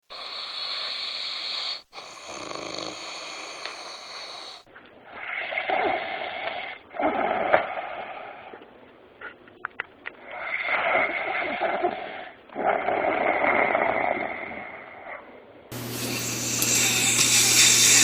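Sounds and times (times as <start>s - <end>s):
man snoring: 0.0s - 4.7s, 16.1s - 18.0s.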